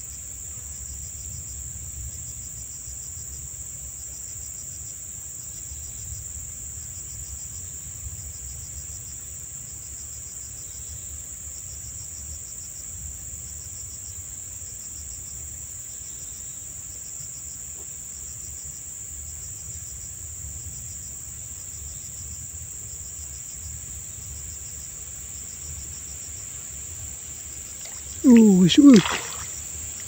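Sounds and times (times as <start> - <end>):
cricket trilled chirps: 0.0 - 30.0
insects droning: 0.0 - 30.0.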